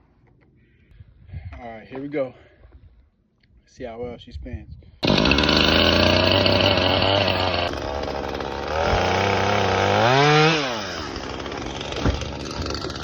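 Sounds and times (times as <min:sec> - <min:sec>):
chainsaw idling and revving: 0:05.0 - 0:13.0.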